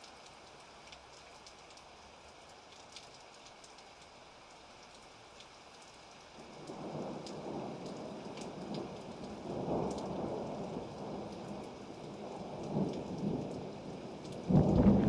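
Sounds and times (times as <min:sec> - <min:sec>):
steady rain: 0:00.0 - 0:15.0
thunder rumble: 0:14.4 - 0:15.0.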